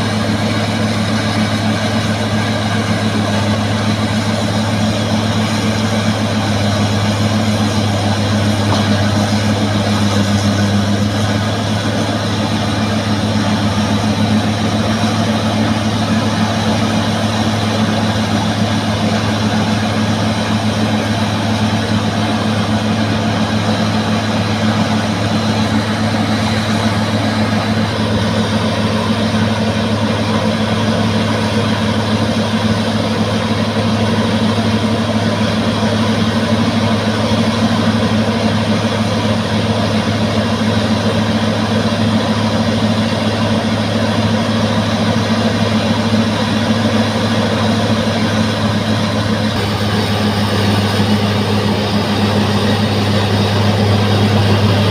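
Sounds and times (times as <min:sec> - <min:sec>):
bulldozer diesel engine running: 0:00.0 - 0:54.9.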